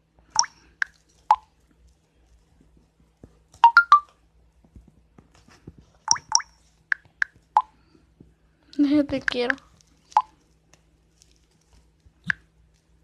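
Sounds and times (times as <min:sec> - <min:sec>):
electronic phone blips: 0:03.6 - 0:04.0.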